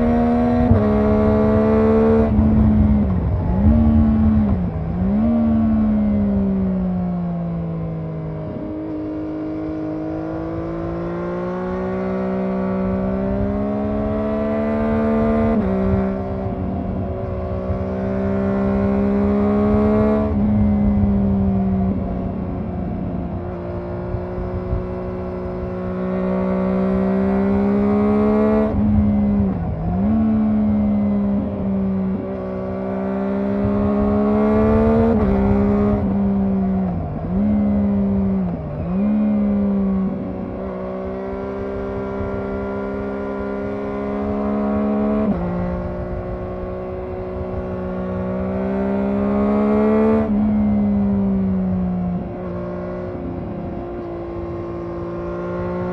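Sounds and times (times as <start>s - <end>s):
motorcycle engine revving: 0.0s - 55.9s
wind and tyre noise: 0.0s - 55.9s.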